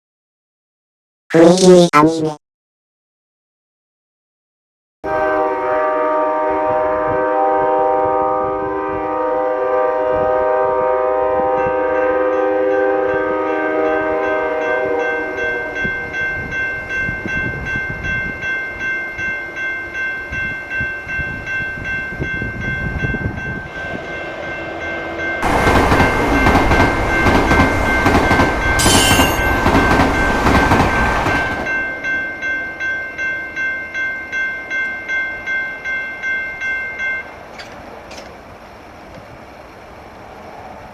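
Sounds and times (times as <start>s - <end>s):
train horn chord: 5.0s - 15.7s
railroad crossing bell ringing: 11.5s - 38.2s
train rumbling past: 20.4s - 32.6s
wheels clickety-clack: 25.4s - 31.7s.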